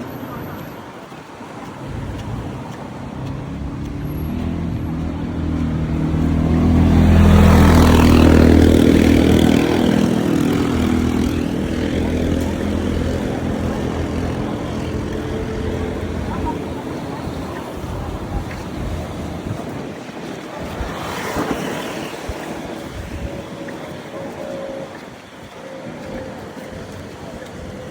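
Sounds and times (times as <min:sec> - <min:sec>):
motor vehicle passing by: 0:01.7 - 0:20.0.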